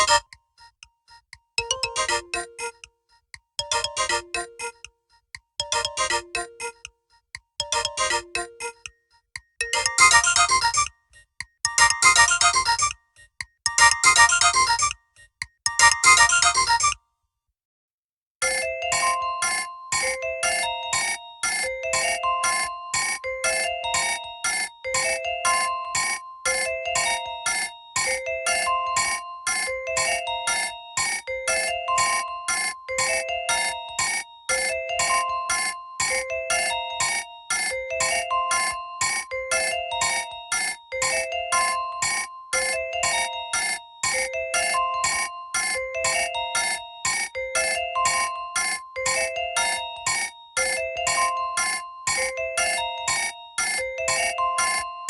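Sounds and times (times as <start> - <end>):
mobile phone ringtone: 0.0 - 0.3, 1.6 - 2.8, 3.6 - 4.8, 5.6 - 6.8, 7.6 - 8.8, 9.6 - 10.9, 11.7 - 12.9, 13.7 - 14.9, 15.7 - 16.9, 18.4 - 55.0.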